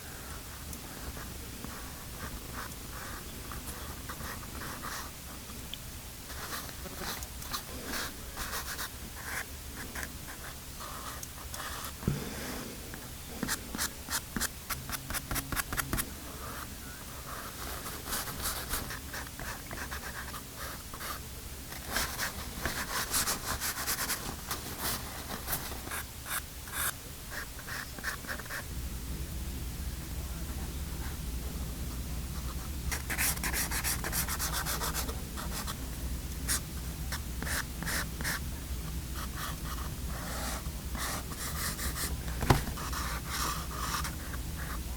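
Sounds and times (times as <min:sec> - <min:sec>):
pastel scratching on paper: 0:21.9 - 0:24.2, 0:39.3 - 0:44.8.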